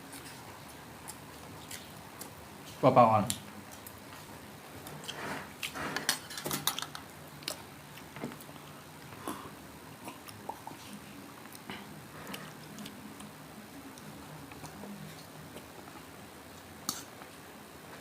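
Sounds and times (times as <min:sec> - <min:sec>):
chewing: 0:00.1 - 0:02.8, 0:06.7 - 0:17.3.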